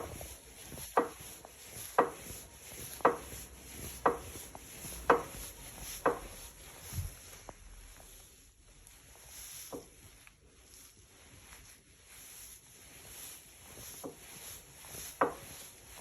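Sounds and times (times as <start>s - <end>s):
exercise bike crank knocking: 0.0s - 0.3s, 0.9s - 1.3s, 2.0s - 6.4s.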